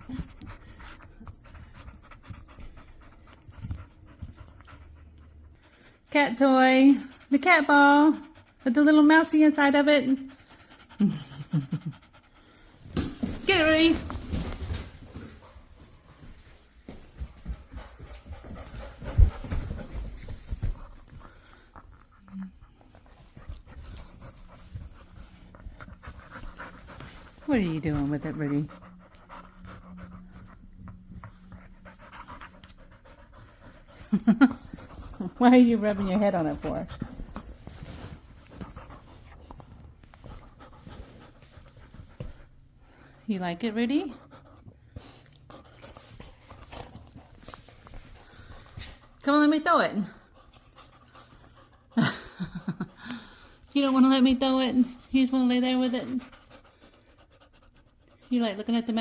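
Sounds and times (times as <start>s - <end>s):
electronic toy squeaks: 0.0s - 5.0s, 6.1s - 16.6s, 17.8s - 22.5s, 23.3s - 25.6s, 34.1s - 39.8s, 45.8s - 47.1s, 48.2s - 48.8s, 50.4s - 51.8s
puppy panting: 0.0s - 58.5s
puppy thumping and scuffling: 12.8s - 22.1s, 34.2s - 42.5s.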